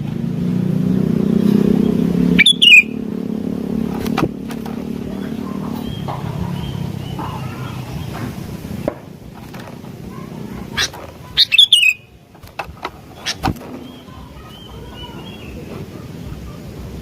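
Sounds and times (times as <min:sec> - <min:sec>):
bird whistled notes: 0:02.4 - 0:03.0, 0:10.7 - 0:12.1, 0:13.2 - 0:15.5
bird chirping run falling in pitch: 0:10.1 - 0:15.6.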